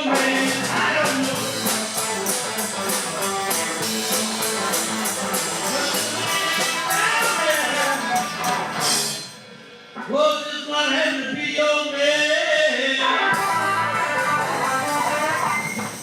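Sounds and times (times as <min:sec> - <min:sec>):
blues-rock band playing: 0:00.0 - 0:09.6, 0:13.1 - 0:16.0
electric guitar bending notes: 0:00.0 - 0:09.6, 0:13.1 - 0:16.0.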